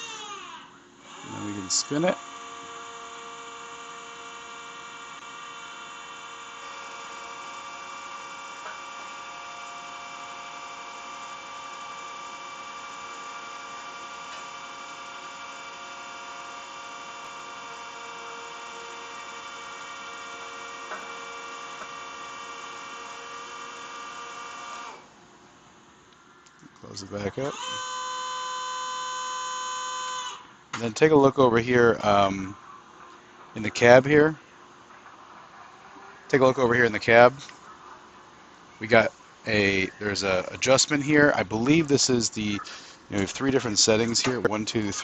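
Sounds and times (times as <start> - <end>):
hydraulic pump motor whining: 0.0 - 25.2, 26.8 - 30.6.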